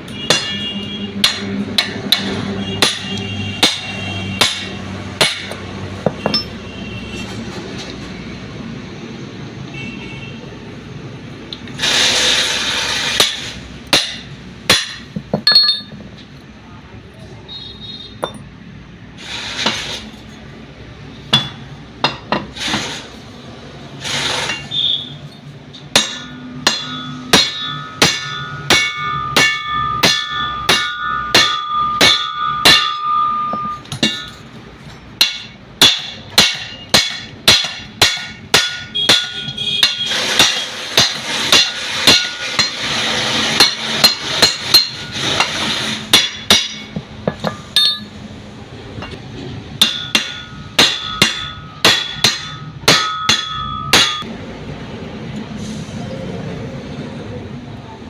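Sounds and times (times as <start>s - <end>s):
hammer striking metal: 0.0s - 7.6s, 13.0s - 16.2s, 18.2s - 18.5s, 21.3s - 22.6s, 25.3s - 48.3s, 48.9s - 54.4s.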